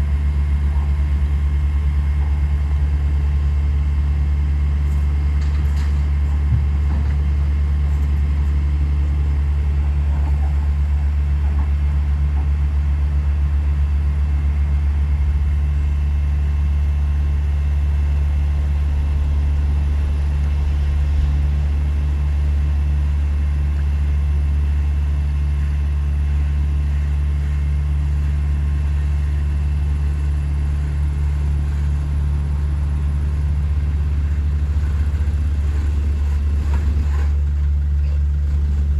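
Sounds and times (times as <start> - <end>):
diesel engine droning: 28.8 - 38.9.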